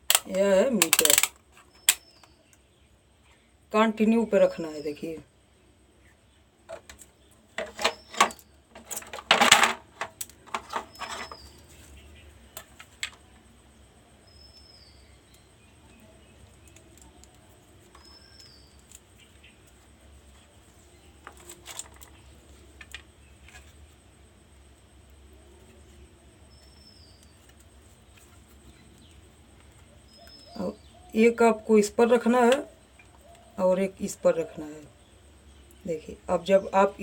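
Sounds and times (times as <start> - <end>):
multimeter clicking and rattling: 0.0 - 2.1
bird chirping: 0.2 - 9.1, 10.6 - 13.5, 14.2 - 23.7, 25.4 - 37.0.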